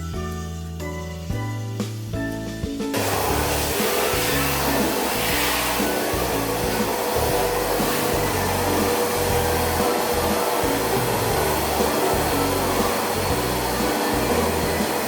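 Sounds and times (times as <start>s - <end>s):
background music: 0.0s - 15.0s
appliance motor whirring: 3.0s - 15.0s.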